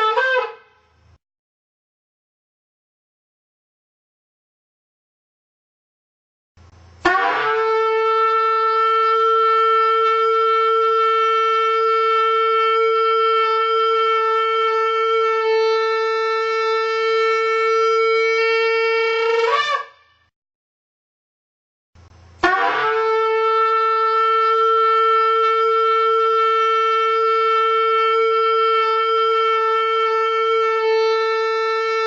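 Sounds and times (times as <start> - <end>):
shofar blowing long note: 0.0 - 0.7, 7.0 - 20.3, 22.4 - 32.0.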